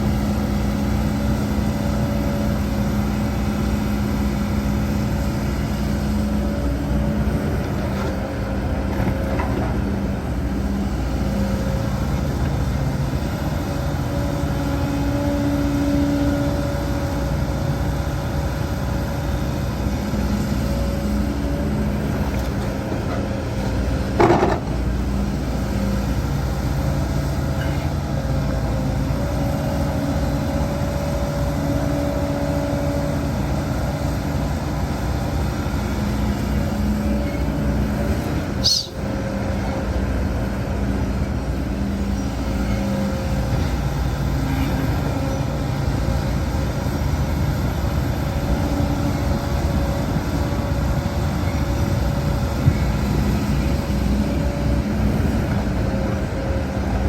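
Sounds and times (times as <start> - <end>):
diesel machinery running: 0.0 - 57.0
short high squeal: 38.6 - 39.0.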